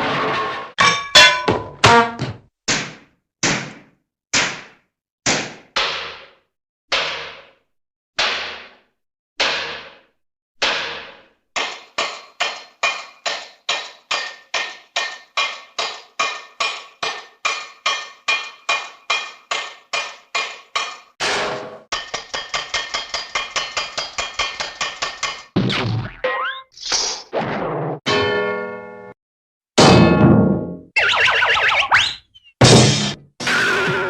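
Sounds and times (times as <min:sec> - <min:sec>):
hammer striking metal: 0:00.2 - 0:03.8, 0:09.4 - 0:25.6, 0:32.6 - 0:34.0.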